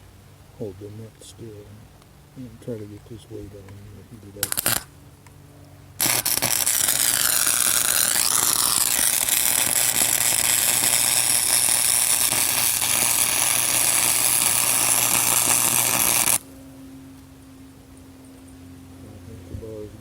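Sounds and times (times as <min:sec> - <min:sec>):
welder arc crackling: 0:01.2 - 0:05.4, 0:06.0 - 0:16.4.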